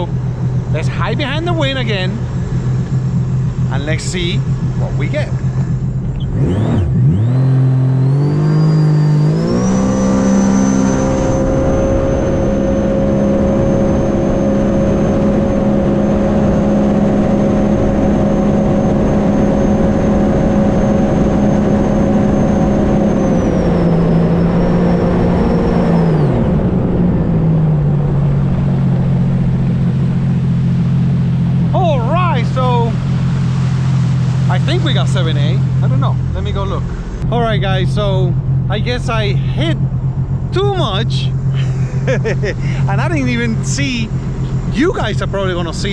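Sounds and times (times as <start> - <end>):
high supercharger whine: 0.0 - 45.9
personal watercraft engine revving: 0.0 - 45.9
heavy wind rush: 9.3 - 45.9.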